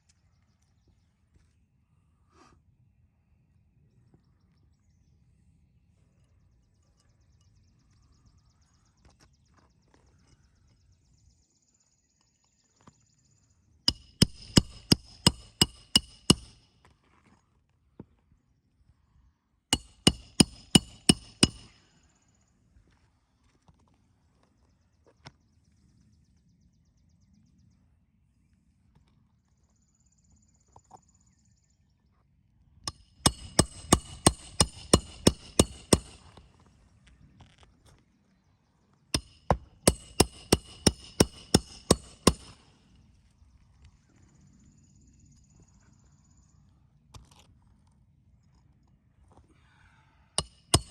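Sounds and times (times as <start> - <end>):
hatchet hammering nails: 13.9 - 16.6, 19.7 - 21.8, 32.9 - 36.4, 39.2 - 42.7, 50.4 - 50.9.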